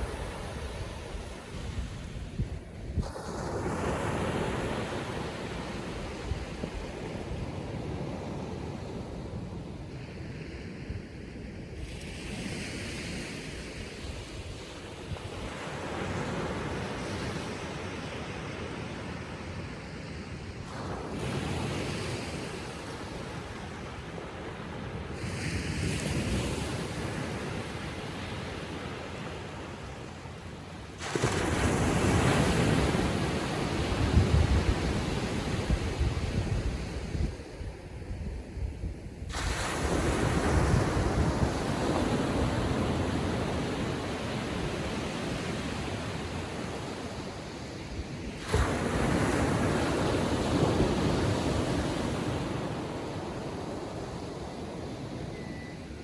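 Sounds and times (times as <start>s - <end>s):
waves breaking: 30.9s - 36.7s, 39.3s - 56.0s.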